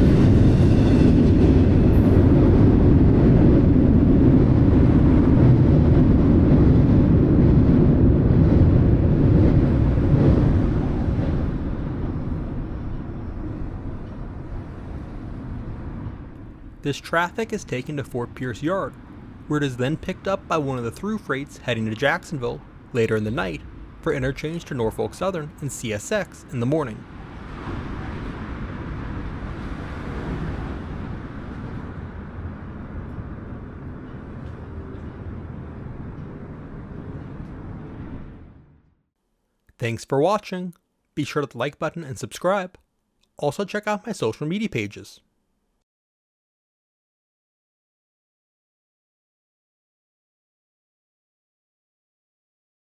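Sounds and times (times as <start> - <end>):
train rumbling over bridge: 0.0 - 38.9.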